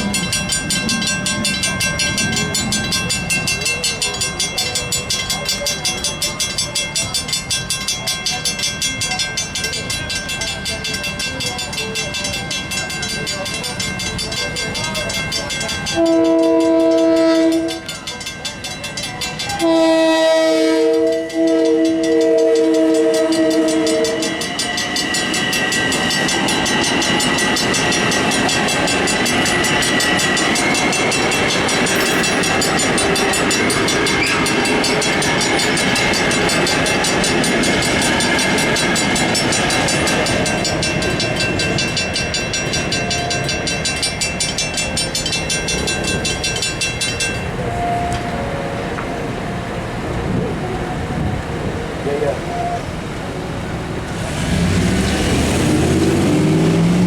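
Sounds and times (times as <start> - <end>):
crossing bells ringing rapidly: 0.0 - 54.3
train passing: 0.0 - 57.0
train horn blasts: 15.9 - 17.9, 19.5 - 25.0, 47.6 - 51.4.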